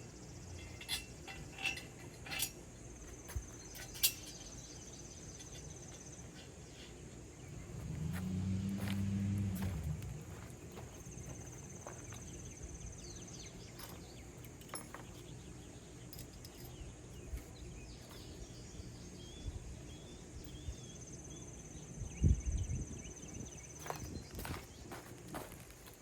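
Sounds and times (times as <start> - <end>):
metal parts clinking: 0.5 - 5.8, 13.6 - 15.3, 16.1 - 18.4.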